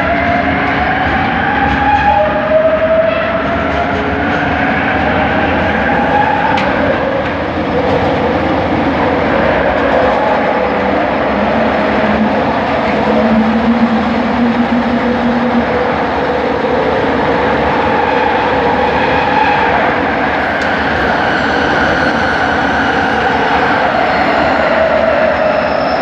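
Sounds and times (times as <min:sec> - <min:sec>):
train motor whine: 0:00.0 - 0:26.0
train wheels rumbling on track: 0:00.0 - 0:26.0
low steady tone: 0:11.2 - 0:16.7.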